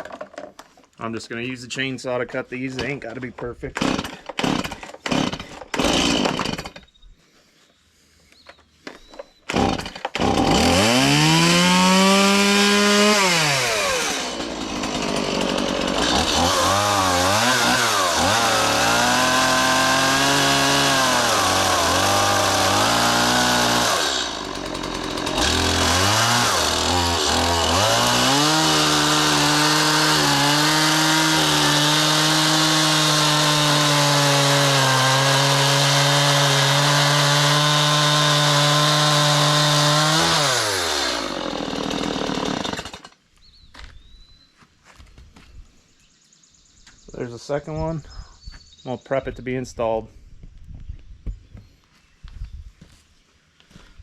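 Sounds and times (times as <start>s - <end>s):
chainsaw cutting timber: 3.7s - 6.9s, 9.5s - 43.2s.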